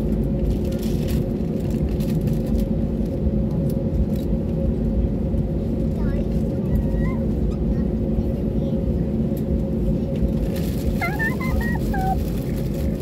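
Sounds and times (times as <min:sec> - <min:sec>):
aircraft cabin low rumble: 0:00.0 - 0:13.0.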